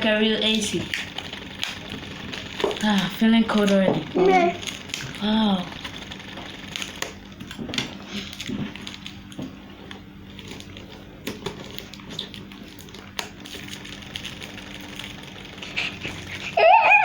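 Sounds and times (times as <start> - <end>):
small fan motor humming: 0.0 - 17.0
cardboard clicking and rattling: 10.3 - 16.6
high whining cry: 15.7 - 17.0.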